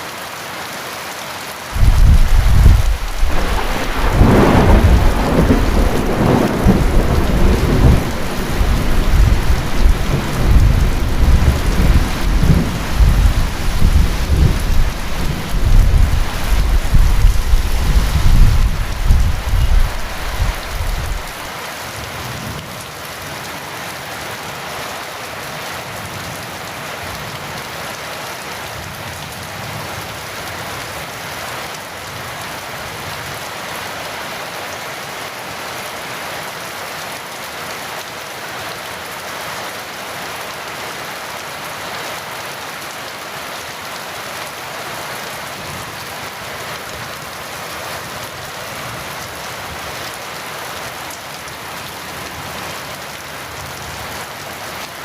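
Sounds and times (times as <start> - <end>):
heavy rain: 0.0 - 55.0
low rumble of thunder: 1.8 - 21.5.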